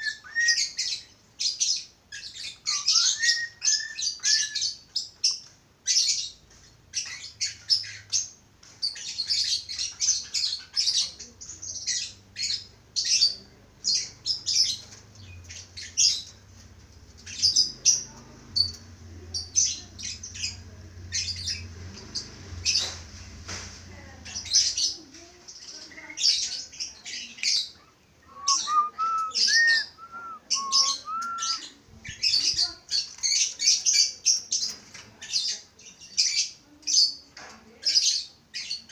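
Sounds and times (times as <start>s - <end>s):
budgerigars chattering: 17.3s - 23.1s
rising whistled notes: 28.3s - 31.6s.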